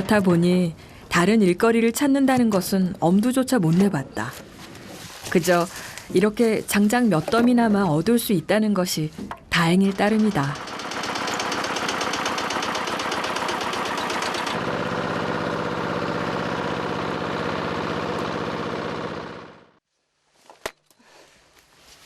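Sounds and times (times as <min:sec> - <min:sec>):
engine running: 0:10.0 - 0:19.8.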